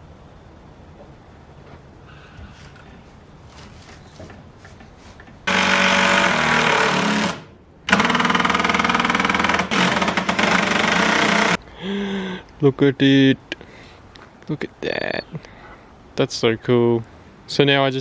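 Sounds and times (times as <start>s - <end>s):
handheld power tool running: 5.5s - 11.6s.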